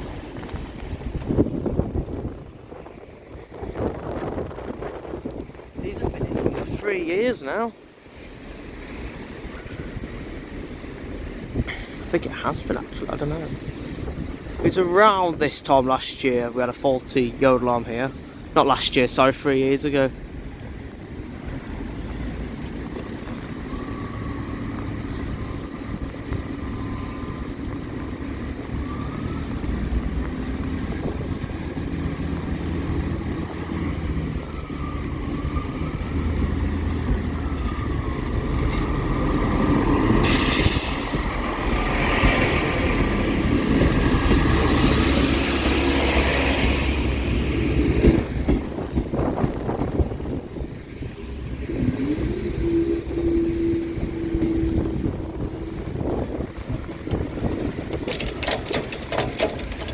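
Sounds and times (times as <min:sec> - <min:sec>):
train engine drone: 0:20.2 - 0:59.9
train wheels on rails: 0:35.0 - 0:59.9.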